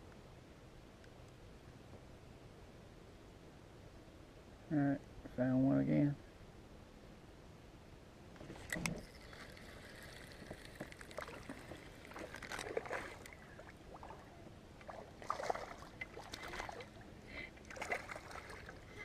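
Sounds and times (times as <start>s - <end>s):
water splashing and sloshing: 8.4s - 19.0s.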